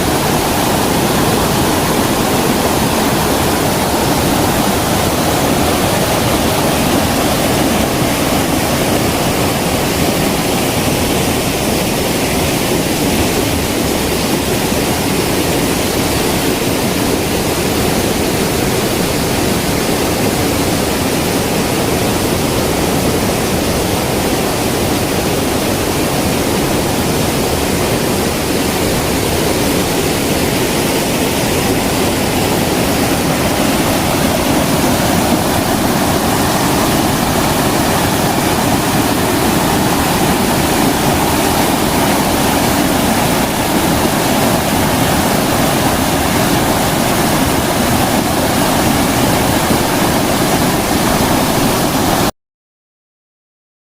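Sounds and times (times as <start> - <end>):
stream water rushing: 0.0 - 52.3.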